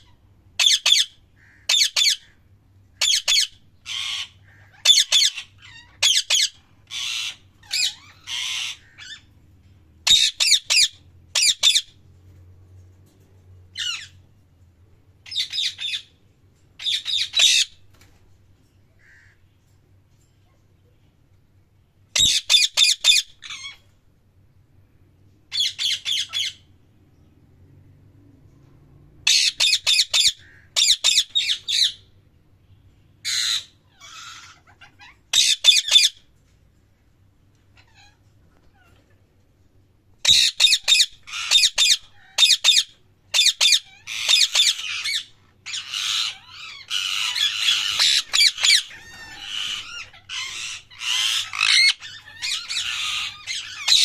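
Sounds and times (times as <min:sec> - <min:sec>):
parrot squawking: 0:00.0 - 0:02.4, 0:03.0 - 0:09.3, 0:10.0 - 0:12.0, 0:15.2 - 0:16.1, 0:16.8 - 0:17.8, 0:22.1 - 0:23.8, 0:25.5 - 0:26.7, 0:29.2 - 0:32.1, 0:33.2 - 0:36.3, 0:37.7 - 0:39.1, 0:40.2 - 0:54.0.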